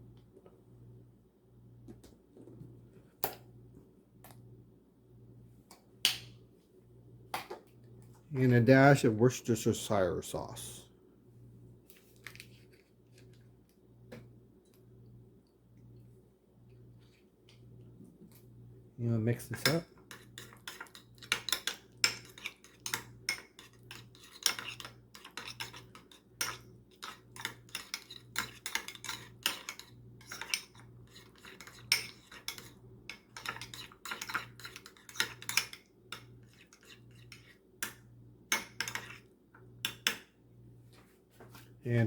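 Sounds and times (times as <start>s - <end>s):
utensil clinking against bowl: 19.6s - 39.2s.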